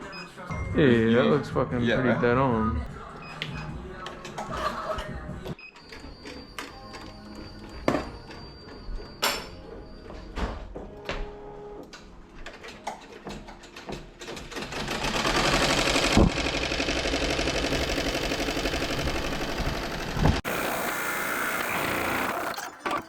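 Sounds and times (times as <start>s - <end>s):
embroidery machine stitching: 14.3s - 23.0s.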